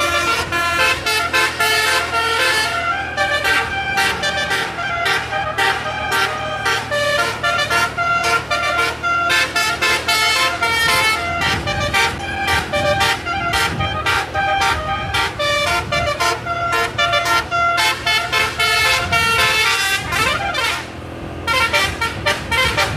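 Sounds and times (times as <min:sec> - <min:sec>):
musical air horn tune: 0:00.0 - 0:22.9.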